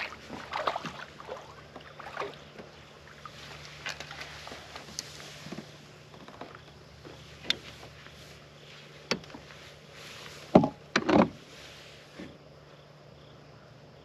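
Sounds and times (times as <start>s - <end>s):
hard knocks on a kayak: 10.5s - 11.4s.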